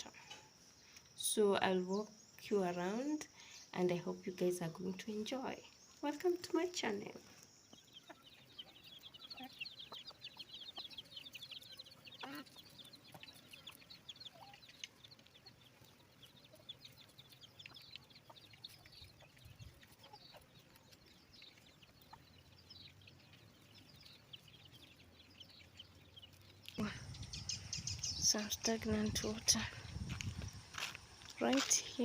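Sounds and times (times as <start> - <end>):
faint bird chirps: 0.0 - 30.7.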